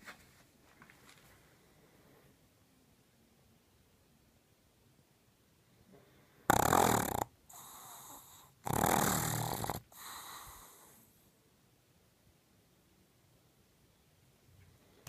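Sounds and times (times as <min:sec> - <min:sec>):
dog snoring loudly: 0:06.5 - 0:11.0.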